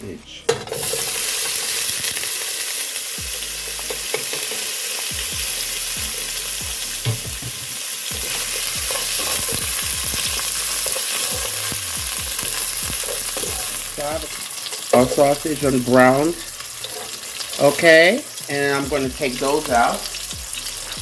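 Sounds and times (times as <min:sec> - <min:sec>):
sausage sizzling in hot oil: 0:00.6 - 0:21.0
utensil scraping and knocking pot: 0:07.0 - 0:18.1.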